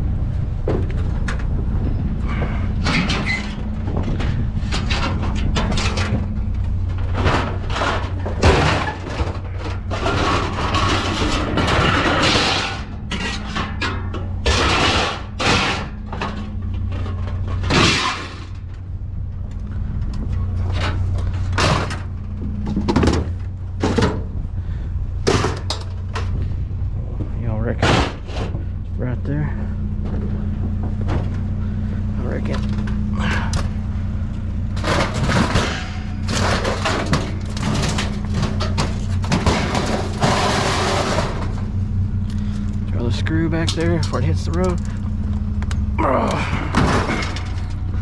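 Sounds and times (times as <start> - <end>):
steady low hum: 0.0 - 48.0
scrap metal clanking and rattling: 0.2 - 48.0
scraping and rustling: 2.3 - 18.8, 29.7 - 46.0.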